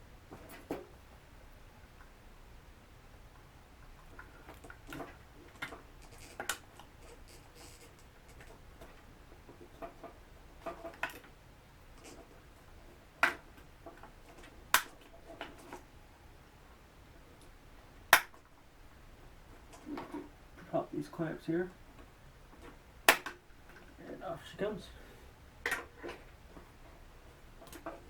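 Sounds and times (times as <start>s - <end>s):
small tools and plastic parts clicking: 4.1s - 11.3s, 27.6s - 28.0s.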